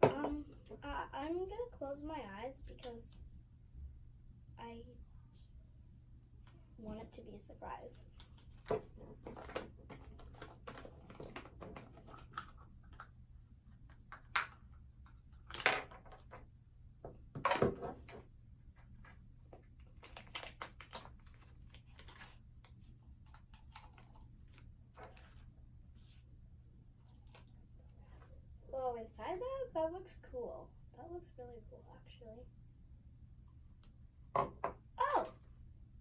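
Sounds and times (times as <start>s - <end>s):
plastic packaging handled: 19.6s - 26.2s.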